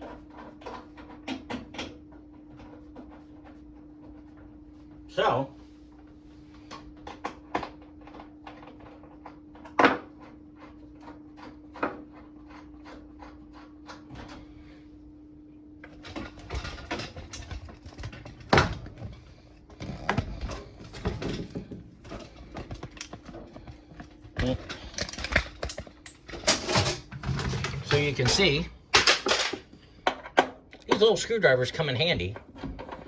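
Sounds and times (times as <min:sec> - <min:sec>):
clattering and handling: 0:15.8 - 0:33.0.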